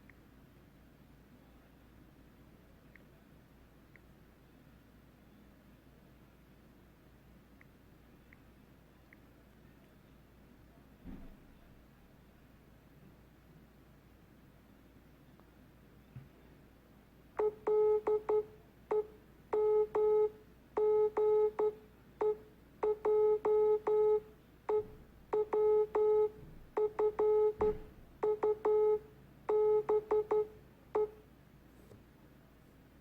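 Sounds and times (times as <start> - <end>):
morse code beeps: 17.4 - 31.2.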